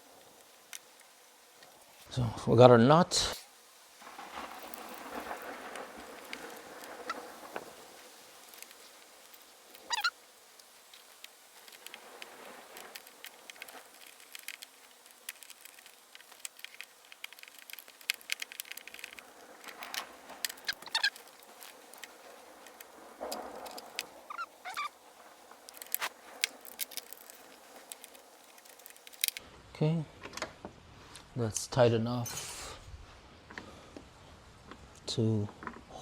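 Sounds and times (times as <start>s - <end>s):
short squeaks: 9.7s - 10.2s, 15.2s - 22.1s, 22.7s - 25.0s.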